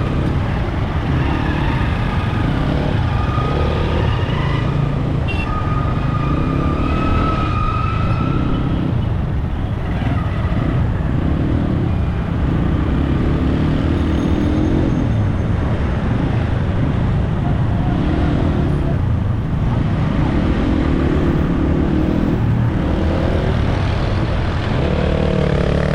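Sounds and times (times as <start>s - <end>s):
vehicle engine and road rumble: 0.0s - 25.9s.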